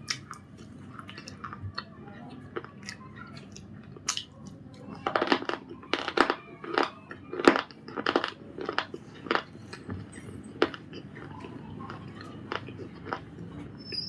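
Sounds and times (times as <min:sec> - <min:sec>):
biscuit crunching: 0:02.5 - 0:13.4.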